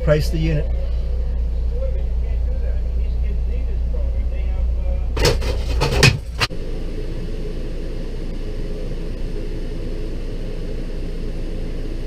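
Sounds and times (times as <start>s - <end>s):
low mechanical hum: 0.0s - 12.0s
sharp knocks: 5.2s - 6.5s.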